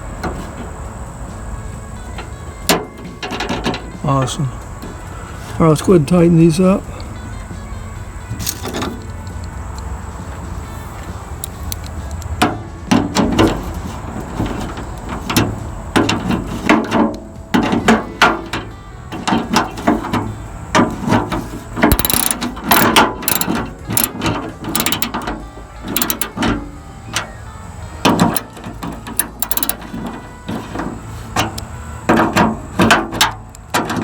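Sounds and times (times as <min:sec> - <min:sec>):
hand ratchet clicking: 0:11.4 - 0:12.4, 0:21.9 - 0:25.3, 0:25.9 - 0:26.4, 0:28.1 - 0:30.0.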